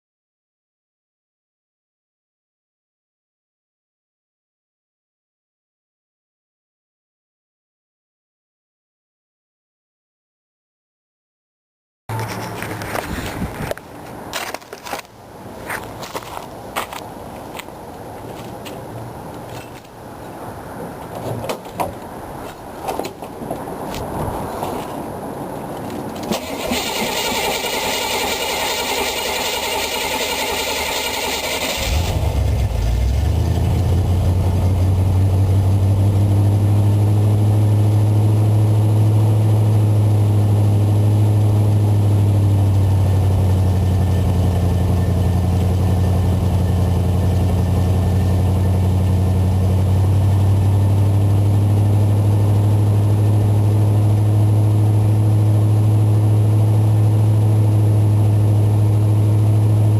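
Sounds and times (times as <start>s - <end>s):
engine starting and idling: 26.2s - 34.1s.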